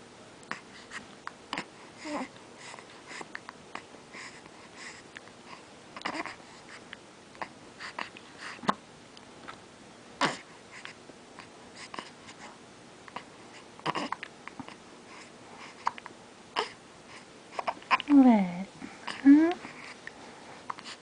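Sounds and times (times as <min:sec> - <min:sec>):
breathy baby noises: 0:00.4 - 0:08.8, 0:10.2 - 0:21.0
baby hiccuping: 0:10.2 - 0:10.4, 0:13.8 - 0:14.2.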